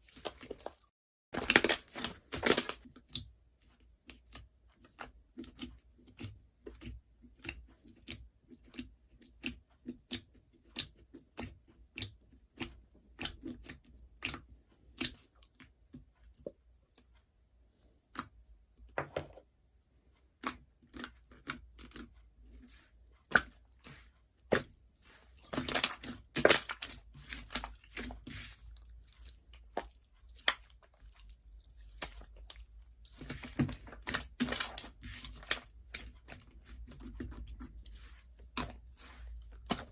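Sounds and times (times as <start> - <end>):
slime clicking and popping: 33.1 - 36.4.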